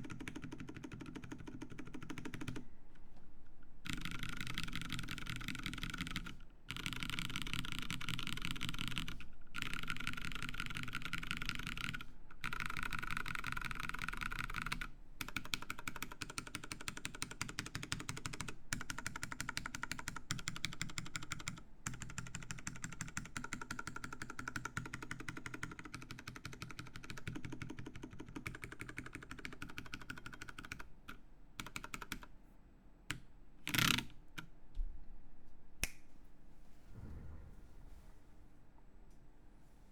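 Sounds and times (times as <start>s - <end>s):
mechanical keyboard typing: 0.0s - 2.6s, 3.8s - 30.9s, 31.6s - 32.3s, 33.6s - 34.5s
loud knock: 36.9s - 38.3s.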